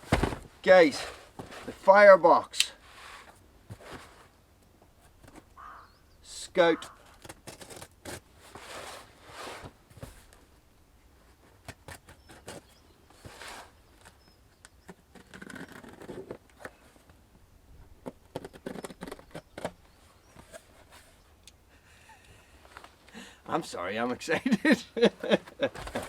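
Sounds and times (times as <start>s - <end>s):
cardboard box rustling and scraping: 0.0s - 1.8s, 2.8s - 4.4s, 7.4s - 10.4s, 11.9s - 14.3s, 25.5s - 26.0s.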